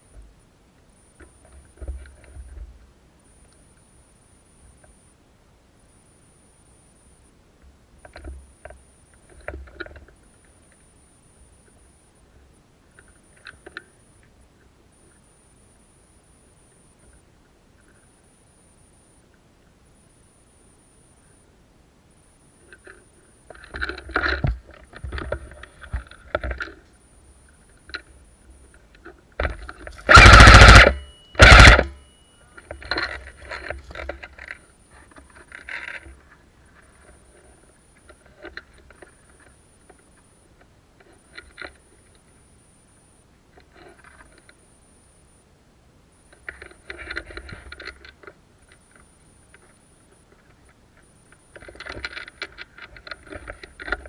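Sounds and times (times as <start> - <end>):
airsoft gun rapid fire: 30.1 - 31.9.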